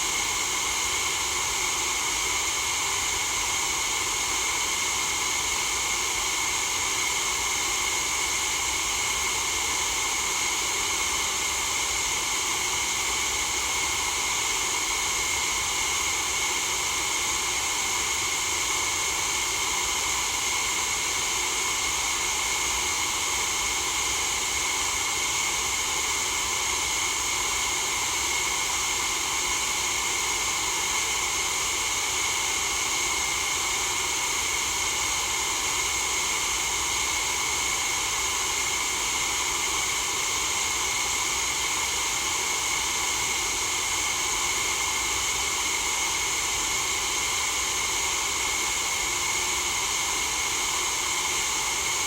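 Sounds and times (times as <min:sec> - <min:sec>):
white noise hiss: 0:00.0 - 0:05.6.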